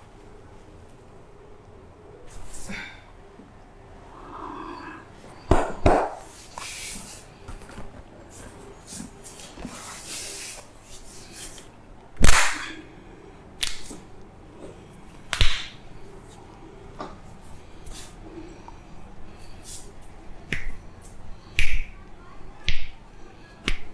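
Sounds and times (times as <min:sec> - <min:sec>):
massage smacks and cracks: 0:12.2 - 0:12.7, 0:13.6 - 0:14.0, 0:15.3 - 0:15.8.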